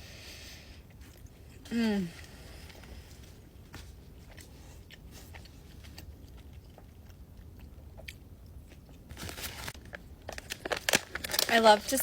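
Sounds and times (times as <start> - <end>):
chewing steak: 2.2 - 9.1.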